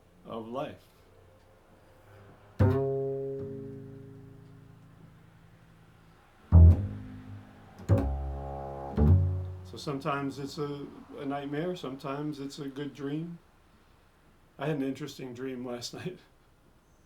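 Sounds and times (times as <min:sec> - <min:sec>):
low plucked string notes: 0:02.6 - 0:04.9, 0:06.5 - 0:09.9.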